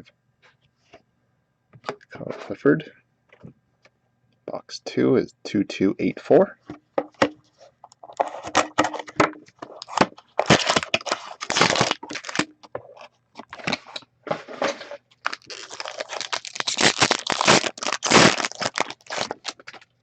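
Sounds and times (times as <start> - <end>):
plastic wrap tearing and crinkling: 9.7 - 13.9, 15.2 - 19.9.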